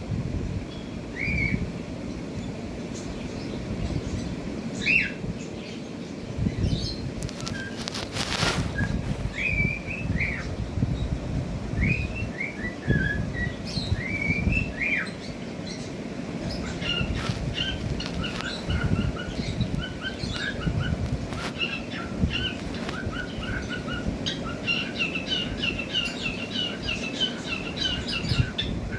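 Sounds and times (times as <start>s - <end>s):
brief rustle: 7.2s - 9.4s
cockatiels chirping and whistling: 11.8s - 15.2s, 16.5s - 28.7s.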